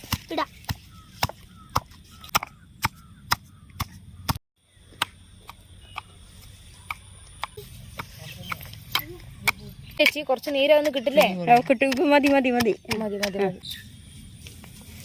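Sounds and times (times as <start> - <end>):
leaves being pounded: 0.0 - 3.9, 10.7 - 13.6.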